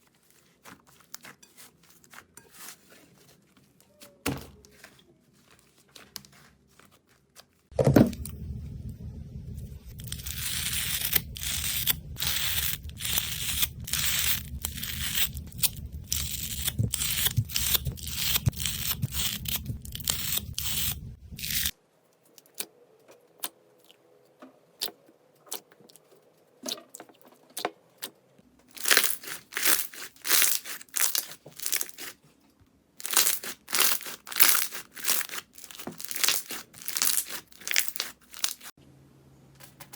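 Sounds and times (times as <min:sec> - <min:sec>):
slime squeezed crackling: 0:09.4 - 0:21.7, 0:28.8 - 0:32.2, 0:33.0 - 0:38.7.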